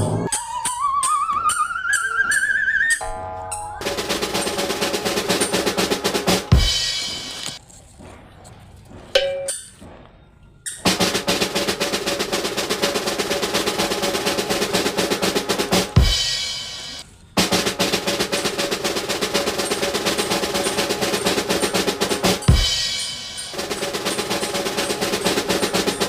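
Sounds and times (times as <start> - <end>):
snare drum roll: 3.8 - 7.6, 10.8 - 26.0.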